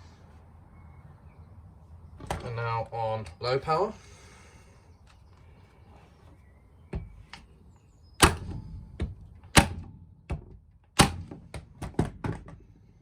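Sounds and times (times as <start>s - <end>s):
nail gun shots: 8.2s - 8.8s, 9.5s - 12.1s.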